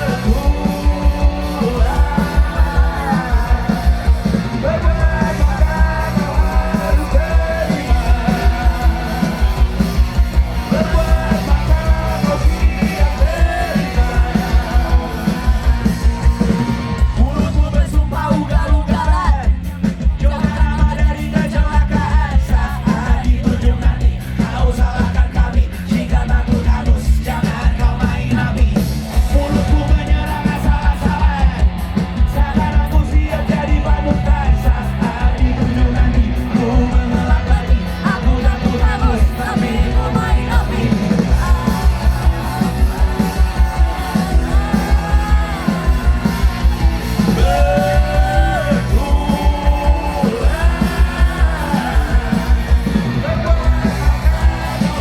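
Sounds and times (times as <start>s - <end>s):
fast drum beat: 0.0s - 55.0s
punk rock music: 0.0s - 55.0s
person singing and shouting: 32.3s - 55.0s.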